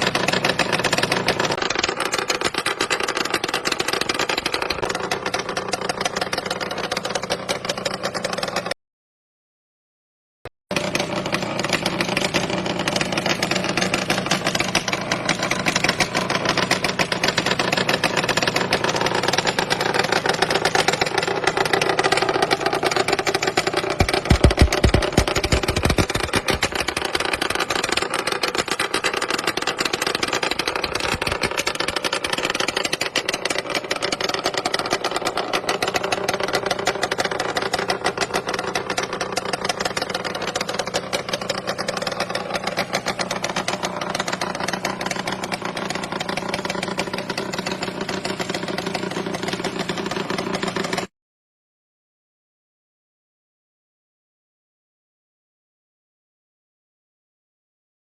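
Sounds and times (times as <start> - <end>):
engine idling: 0.0 - 8.8, 10.7 - 51.1
engine throttle burst: 10.7 - 51.1.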